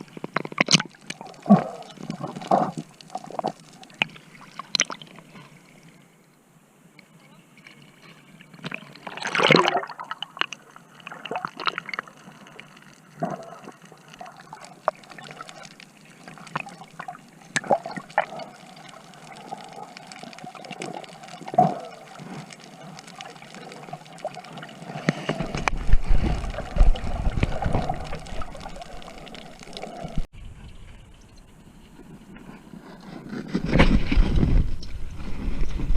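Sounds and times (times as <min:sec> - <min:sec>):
water splashes and clicks: 0:00.0 - 0:05.9, 0:07.0 - 0:30.3
water sloshing and gurgling: 0:00.0 - 0:06.1, 0:07.6 - 0:30.3.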